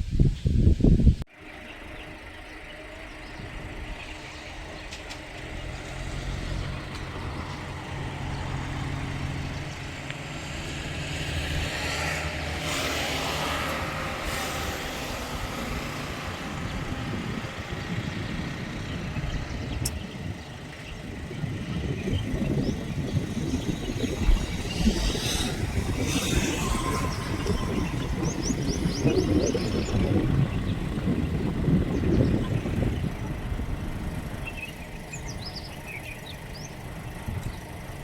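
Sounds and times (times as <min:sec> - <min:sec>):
vehicle engine humming: 0:01.3 - 0:38.0
hissing rush: 0:23.2 - 0:30.4.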